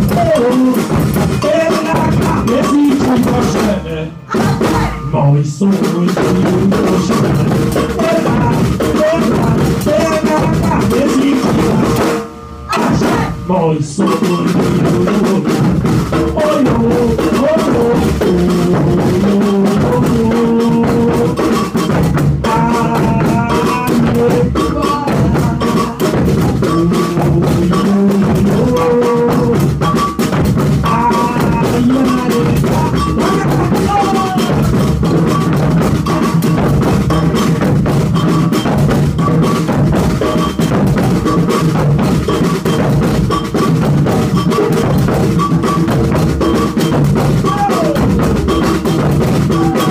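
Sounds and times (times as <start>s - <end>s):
percussion ensemble drumming: 0.0s - 49.9s
wavering melody: 16.1s - 49.9s.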